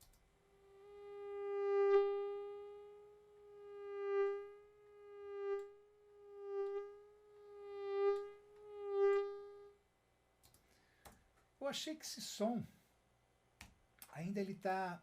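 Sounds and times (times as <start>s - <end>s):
synthesized mosquito buzzing: 0.3s - 9.8s.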